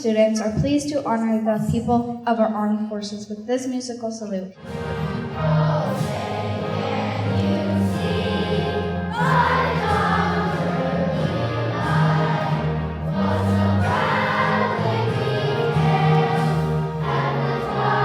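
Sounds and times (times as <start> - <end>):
children's choir singing: 4.6 - 18.0
sustained instrumental accompaniment: 4.6 - 18.0.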